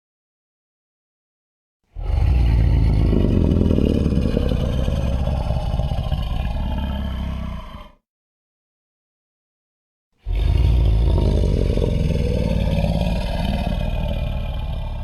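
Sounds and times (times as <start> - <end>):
deep growling monster roar: 2.0 - 8.0, 10.2 - 15.0.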